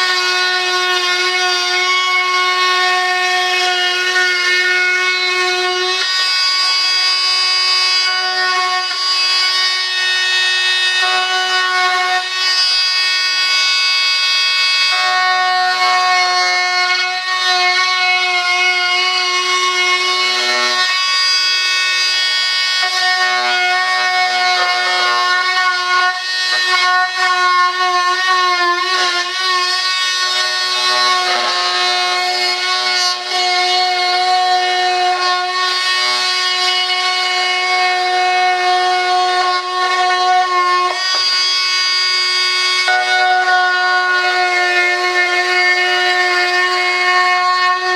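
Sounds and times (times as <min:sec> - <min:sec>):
rotary power tool whining: 0:00.0 - 0:47.9
gritty rasp of cutting: 0:14.6 - 0:47.9.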